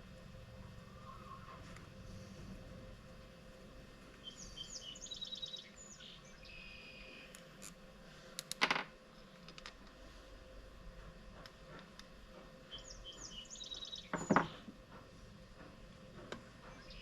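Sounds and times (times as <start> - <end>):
birds chirping and trilling: 0.9 - 2.2, 4.2 - 7.3, 12.6 - 14.7, 16.6 - 17.0.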